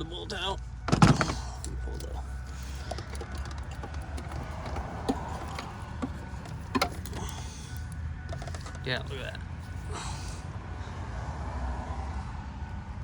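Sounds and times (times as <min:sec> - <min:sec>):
small clicks and creak: 0:01.2 - 0:09.8.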